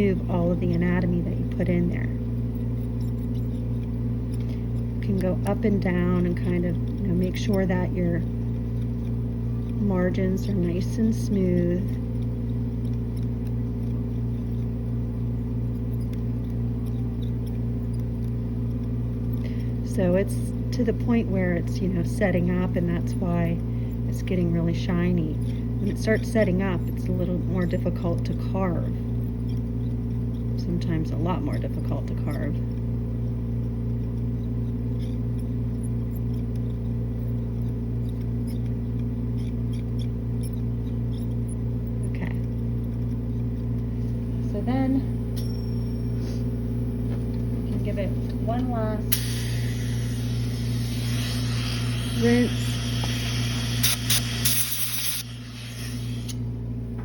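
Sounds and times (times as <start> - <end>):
dental instrument ticks and scrapes: 0.0 - 56.4
low hum: 0.0 - 57.0.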